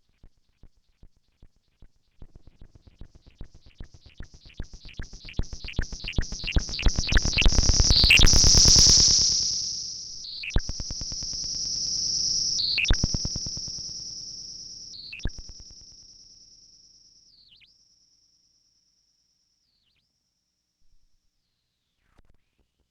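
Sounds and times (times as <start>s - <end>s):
high-pitched electronic whine: 3.0s - 17.7s
repeating electronic clicks: 4.1s - 13.9s.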